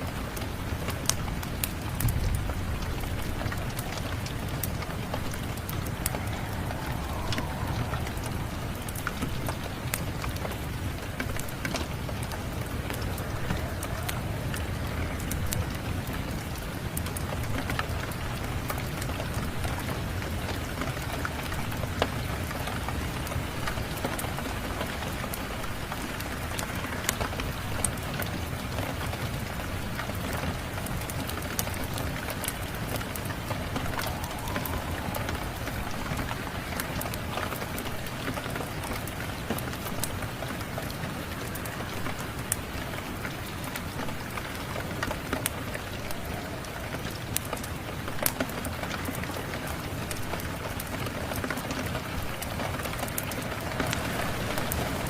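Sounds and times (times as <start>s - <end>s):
steady rain falling: 0.0s - 55.0s
wood fire crackling: 0.0s - 55.0s.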